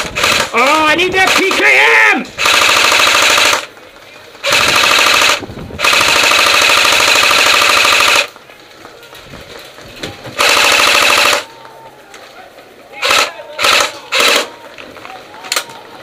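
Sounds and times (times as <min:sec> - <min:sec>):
airsoft gun firing full-auto: 0:00.0 - 0:01.7, 0:02.4 - 0:03.7, 0:04.4 - 0:08.3, 0:10.4 - 0:11.5, 0:13.0 - 0:14.5.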